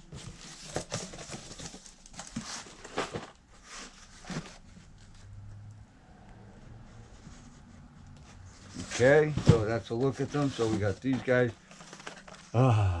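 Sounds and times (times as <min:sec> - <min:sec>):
plastic packaging crinkling: 0:10.6 - 0:12.6.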